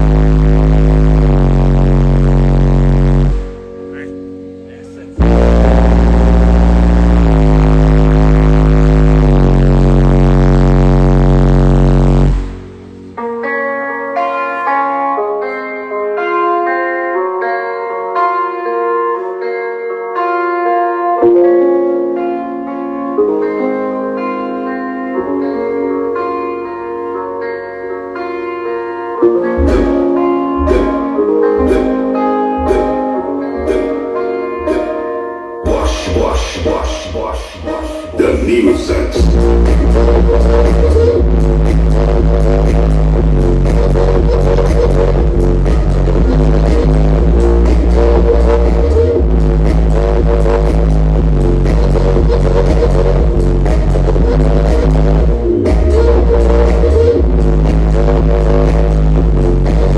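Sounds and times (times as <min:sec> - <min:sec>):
distorted subwoofer bass music: 0:00.0 - 0:15.2, 0:29.2 - 0:34.0, 0:38.2 - 0:59.9.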